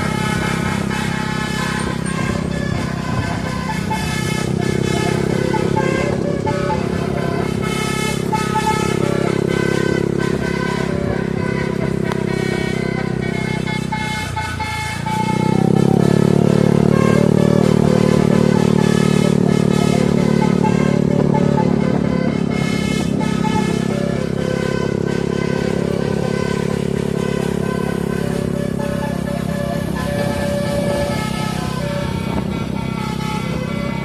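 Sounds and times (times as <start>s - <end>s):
multi-trumpet air horn melody: 0.0s - 34.0s
road and engine noise: 0.0s - 34.0s.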